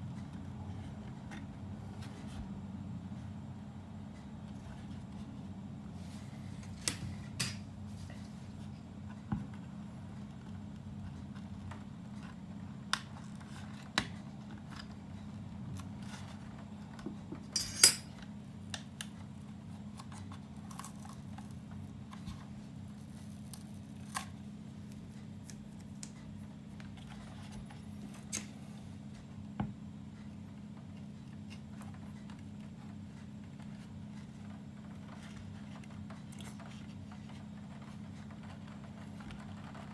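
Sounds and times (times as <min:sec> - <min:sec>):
tools clicking and tapping: 0:06.9 - 0:07.6, 0:17.4 - 0:18.2
parts clattering: 0:17.4 - 0:18.1.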